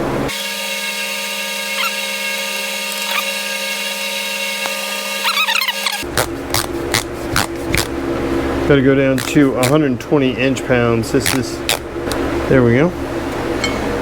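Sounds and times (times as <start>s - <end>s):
mechanical whine: 0.0s - 6.4s.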